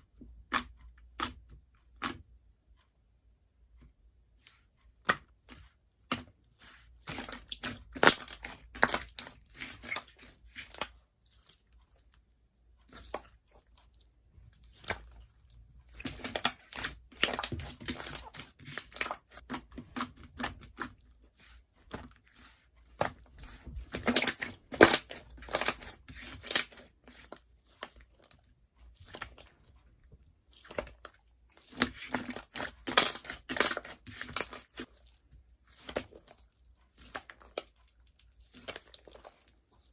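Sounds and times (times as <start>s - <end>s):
slime squished by hand: 7.0s - 10.9s, 15.9s - 28.4s, 30.5s - 36.4s.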